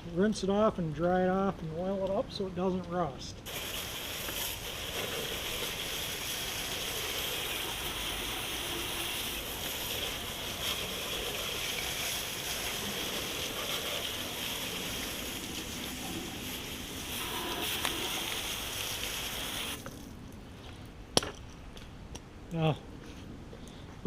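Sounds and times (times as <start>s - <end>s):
water spraying on metal: 3.4s - 20.2s.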